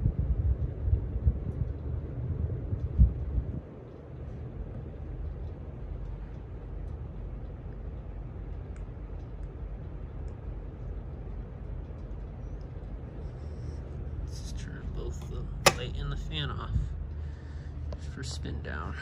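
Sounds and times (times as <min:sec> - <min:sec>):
ceiling fan running: 0:00.0 - 0:19.0.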